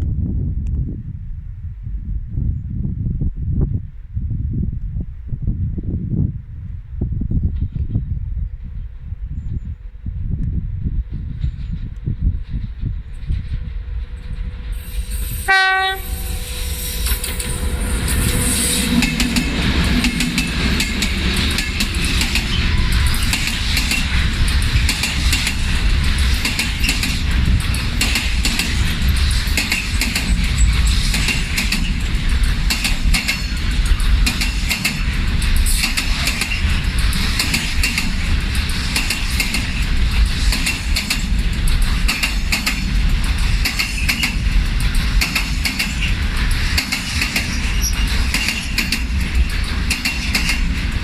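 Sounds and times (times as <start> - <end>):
train rushing past: 8.6 - 51.0
train horn blast: 13.8 - 22.0
wheels clicking over rail joints: 18.9 - 51.0.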